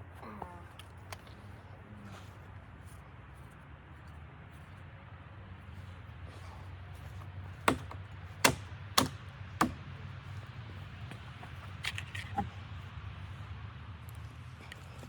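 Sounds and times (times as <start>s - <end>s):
sharp knocks: 7.7s - 9.8s.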